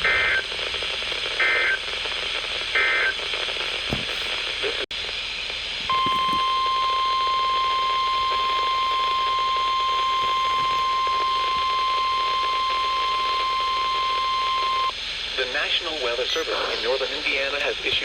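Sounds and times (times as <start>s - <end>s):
steady high alarm tone: 0.0s - 0.5s, 1.4s - 1.8s, 2.8s - 3.1s, 5.9s - 14.9s
radio hiss: 0.0s - 18.0s.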